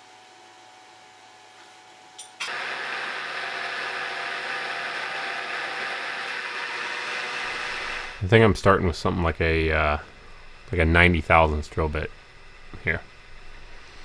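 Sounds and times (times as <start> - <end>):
milling machine motor running: 2.4 - 8.2.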